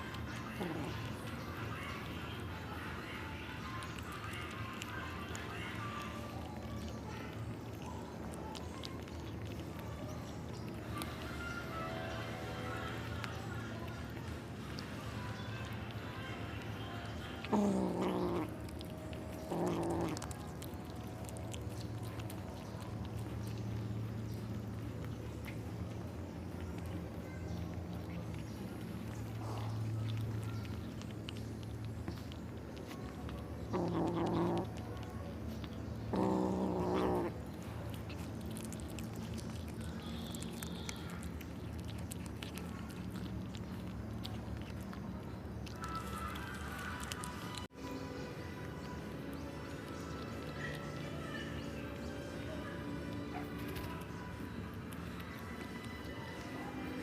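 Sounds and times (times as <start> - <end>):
kittens chewing and crunching: 0.0 - 57.0.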